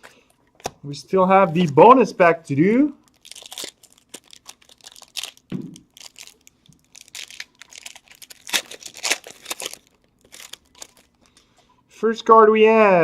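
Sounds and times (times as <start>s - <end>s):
foil wrapper tearing: 3.1s - 11.4s
foil wrapper crackling: 3.1s - 11.5s.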